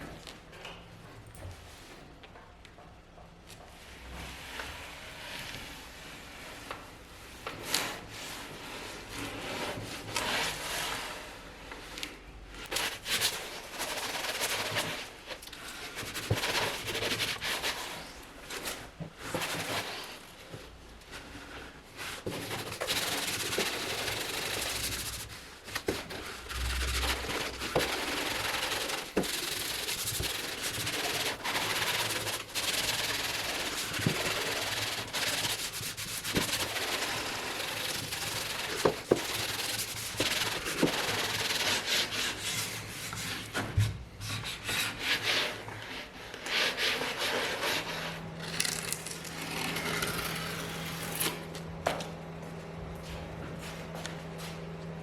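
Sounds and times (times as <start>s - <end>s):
sandpaper rubbing: 22.3s - 25.3s, 26.5s - 42.7s.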